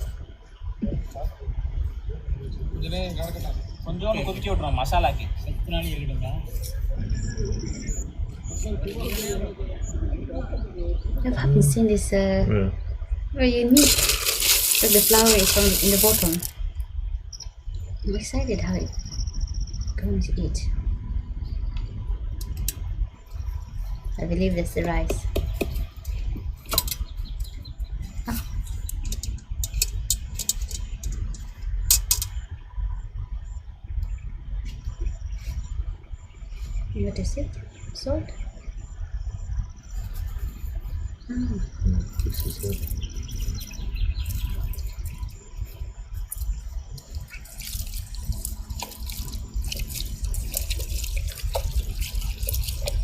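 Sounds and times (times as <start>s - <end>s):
low rumble: 0.0s - 53.0s
water splashing and dripping: 46.3s - 53.0s
small plops and crackles: 46.4s - 53.0s.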